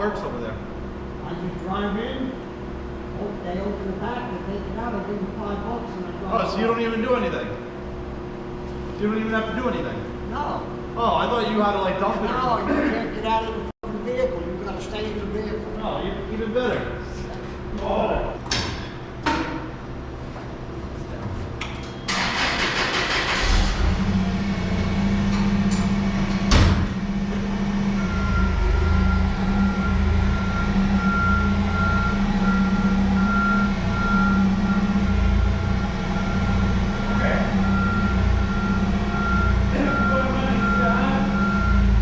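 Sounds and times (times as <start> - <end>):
truck engine starting and idling: 21.8 - 42.0
door slamming: 26.4 - 27.0
reversing alarm beeping: 27.9 - 42.0.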